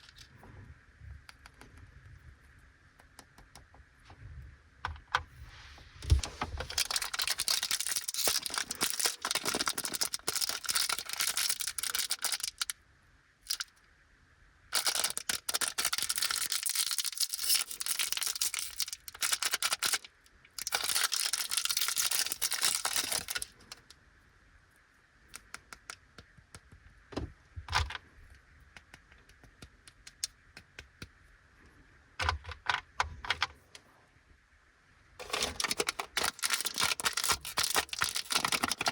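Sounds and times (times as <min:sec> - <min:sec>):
plastic wrappers crackling: 0:06.2 - 0:12.7, 0:14.7 - 0:23.8, 0:35.2 - 0:38.9.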